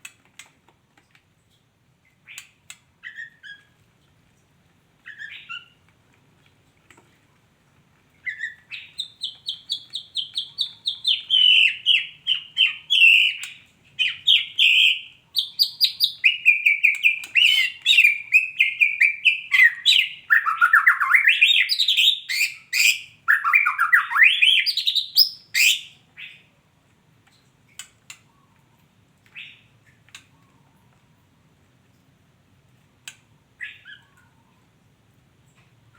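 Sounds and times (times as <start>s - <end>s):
bird singing rapid notes: 8.3s - 25.9s.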